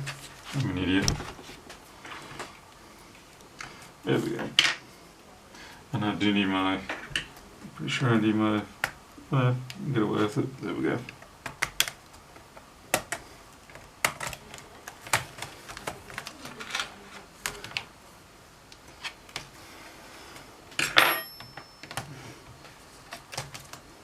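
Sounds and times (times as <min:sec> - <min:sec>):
plastic keyboard clips snapping: 0:11.4 - 0:12.0, 0:12.9 - 0:17.9.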